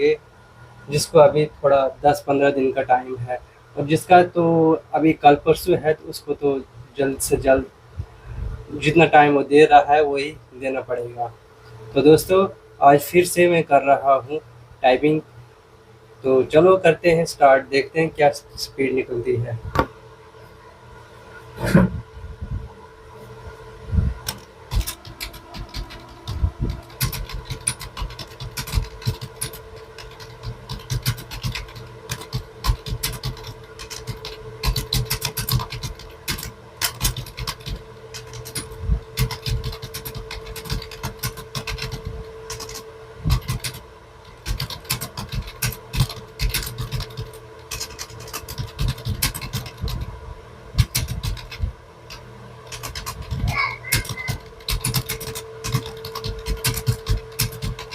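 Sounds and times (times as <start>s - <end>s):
steady hum: 0.0s - 57.9s
fast keyboard typing: 24.2s - 50.1s, 50.8s - 57.9s.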